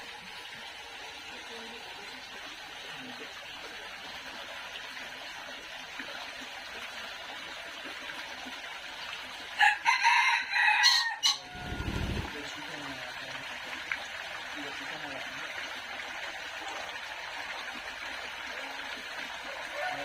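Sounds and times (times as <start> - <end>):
rooster crowing: 9.6 - 12.4, 19.5 - 20.0.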